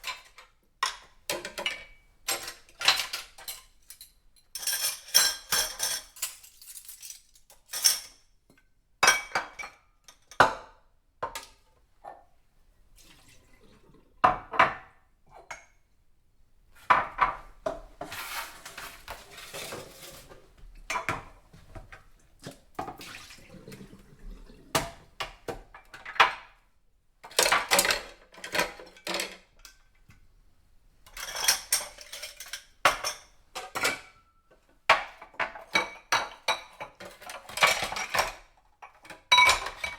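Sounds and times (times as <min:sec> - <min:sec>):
dishes clinking and clattering: 0:00.0 - 0:08.3, 0:09.0 - 0:12.2, 0:13.7 - 0:15.8, 0:16.8 - 0:22.1, 0:27.2 - 0:29.8, 0:31.0 - 0:39.9.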